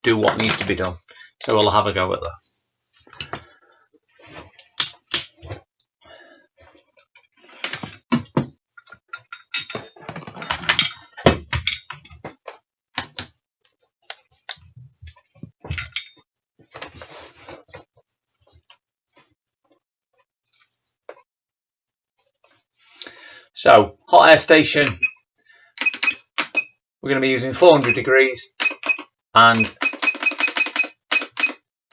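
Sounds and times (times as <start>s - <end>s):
objects clattering: 7.4s - 12.6s
tools clinking on workbench: 8.8s - 12.2s, 15.6s - 16.2s.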